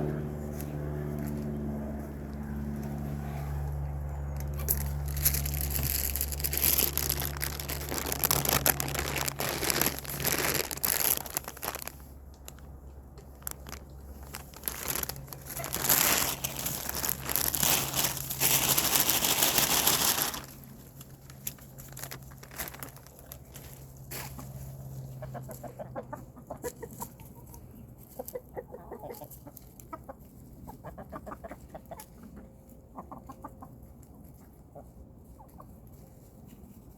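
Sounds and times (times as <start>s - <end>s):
plastic bag crinkling: 4.4s - 24.2s.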